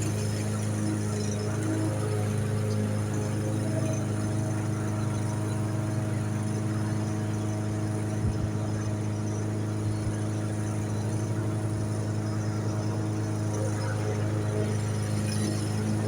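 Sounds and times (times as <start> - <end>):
lawn mower engine running: 0.0 - 16.0.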